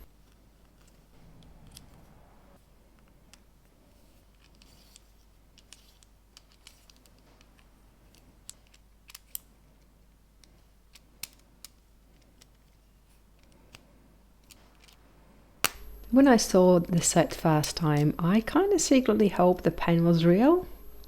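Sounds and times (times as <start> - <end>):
plastic bricks clicking and scraping: 4.3 - 9.4.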